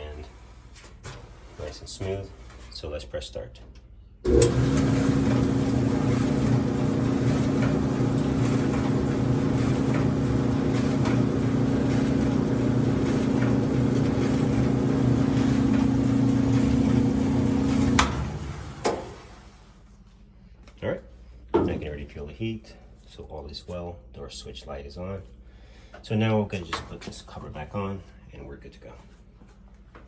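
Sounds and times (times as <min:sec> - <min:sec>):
dryer cutting off click: 0:04.2 - 0:19.4
clothes dryer humming: 0:04.2 - 0:20.2.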